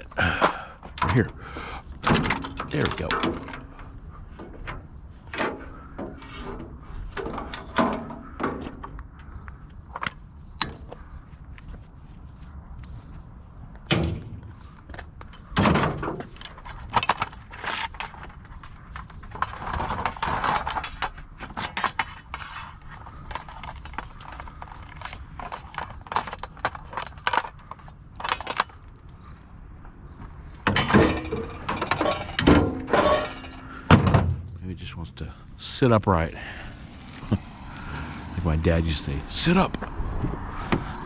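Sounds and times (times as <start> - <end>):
scrap metal clanking and rattling: 0.3 - 9.4, 13.9 - 29.3, 30.5 - 34.6.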